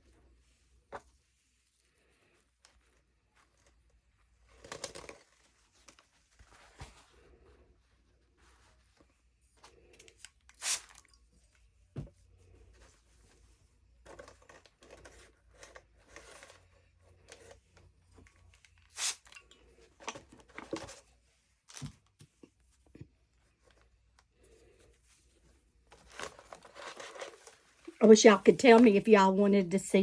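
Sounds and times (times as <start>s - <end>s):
fabric rustling and crinkling: 0.8s - 9.9s, 20.2s - 29.8s.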